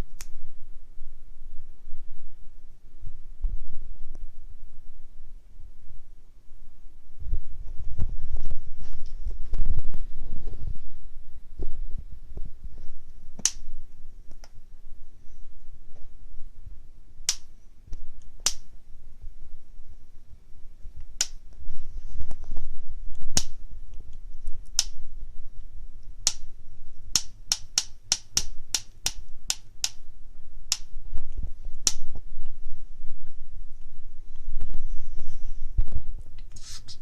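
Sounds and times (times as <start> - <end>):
parrot clicking its beak: 27.1 - 30.0.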